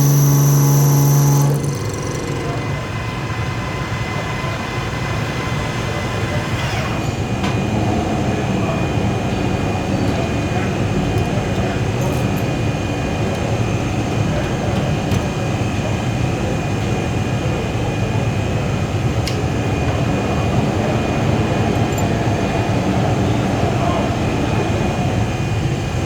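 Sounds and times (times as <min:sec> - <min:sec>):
high steady whine: 0:00.0 - 0:06.5
lathe humming: 0:00.0 - 0:26.0.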